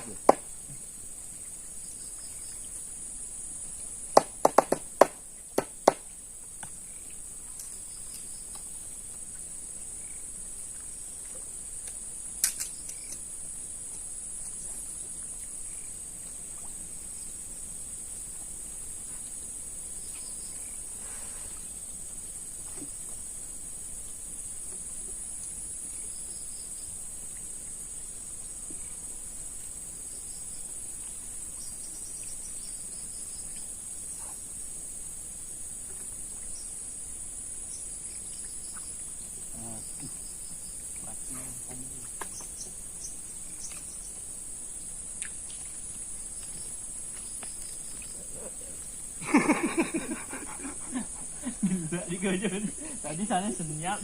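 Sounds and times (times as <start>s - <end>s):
high-pitched insect chorus: 0.0s - 54.0s
sharp clicks: 12.4s - 13.2s.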